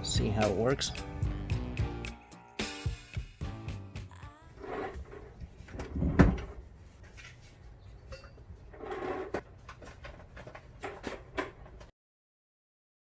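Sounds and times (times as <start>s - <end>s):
parts knocking and clattering: 8.0s - 11.9s.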